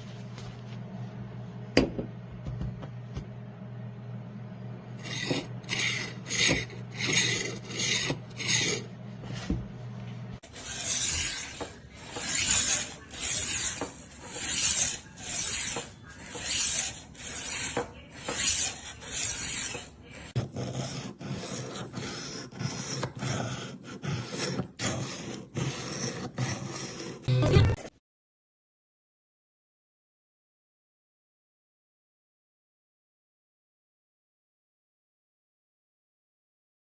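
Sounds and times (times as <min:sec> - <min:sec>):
knife sharpener rasping on blade: 0:05.0 - 0:08.9, 0:10.4 - 0:27.3.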